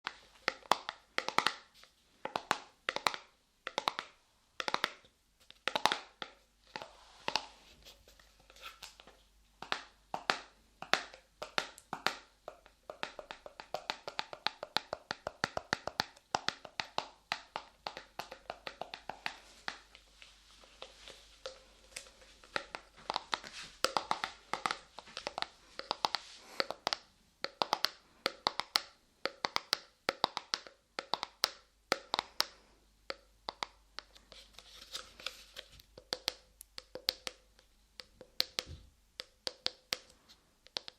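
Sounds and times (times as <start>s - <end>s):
quick taps: 20.7s - 34.4s.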